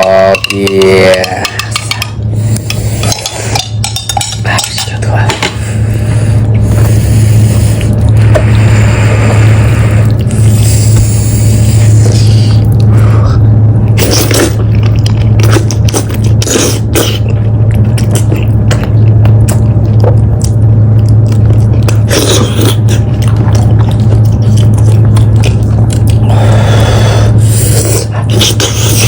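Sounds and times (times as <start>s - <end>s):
steady low hum: 0.0s - 29.0s
wet crunchy chewing: 13.9s - 29.0s.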